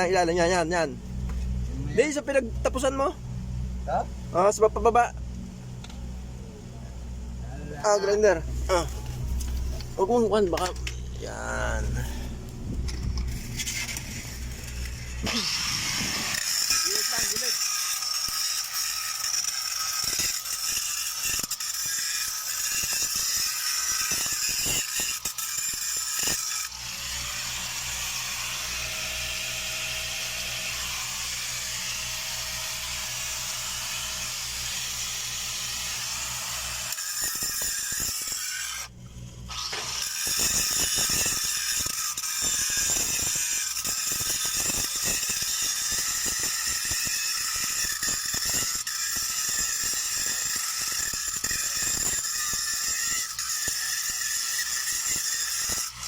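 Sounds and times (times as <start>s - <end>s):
steady low hum: 0.0s - 20.4s, 38.2s - 46.6s
grinding metal: 7.0s - 56.0s
welding crackling and hiss: 7.8s - 56.0s.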